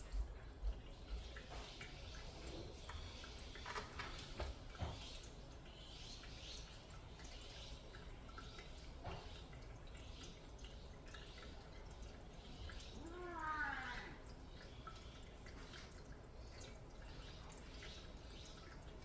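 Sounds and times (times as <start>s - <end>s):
cat lapping water: 0.1s - 19.0s.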